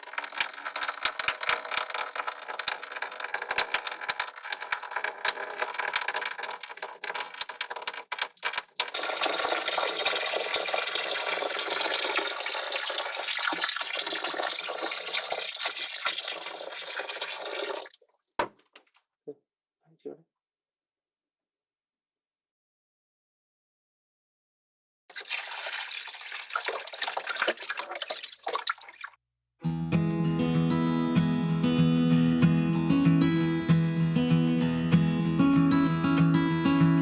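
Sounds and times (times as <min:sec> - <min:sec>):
water pouring and splashing: 0:00.0 - 0:18.1, 0:25.1 - 0:29.2.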